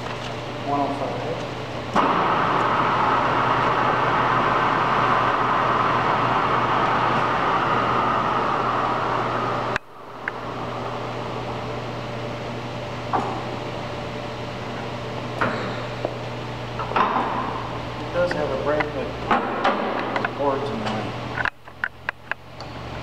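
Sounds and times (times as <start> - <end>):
lathe running with a hum: 0.0 - 21.5.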